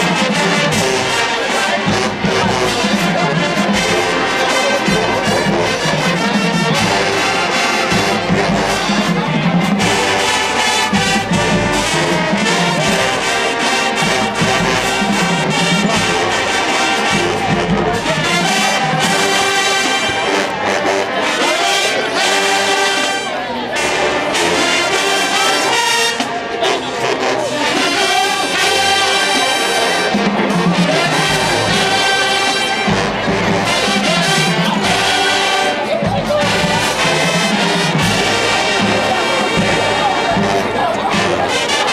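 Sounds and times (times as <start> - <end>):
marching band brass: 0.0 - 41.9
drum hits: 28.5 - 41.8.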